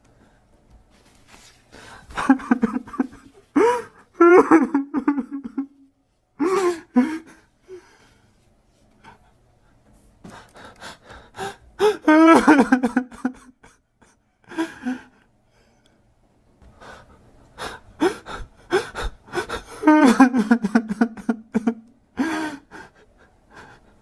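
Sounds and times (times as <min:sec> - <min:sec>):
shaky breaths: 0:00.1 - 0:02.4, 0:10.2 - 0:11.9
man sobbing: 0:02.0 - 0:07.8, 0:10.6 - 0:15.3, 0:17.6 - 0:24.0.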